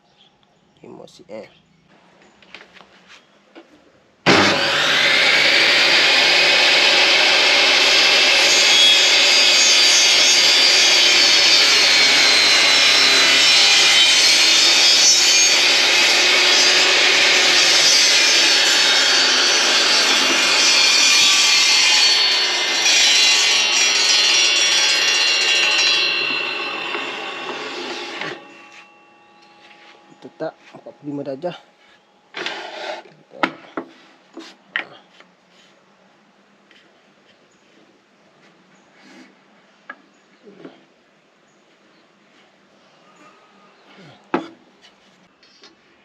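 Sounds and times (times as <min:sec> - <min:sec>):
table saw cutting wood: 0:04.3 - 0:30.4, 0:32.3 - 0:33.1.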